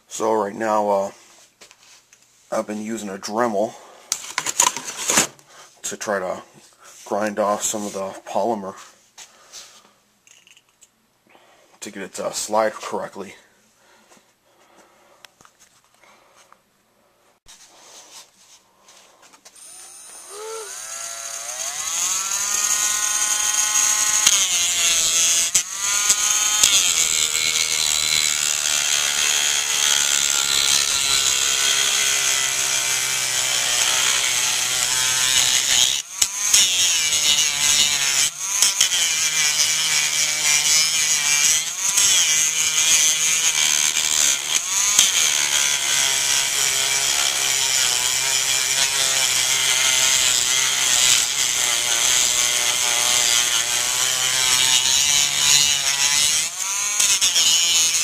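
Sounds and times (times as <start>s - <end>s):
rotary tool grinding plastic: 19.5s - 58.0s.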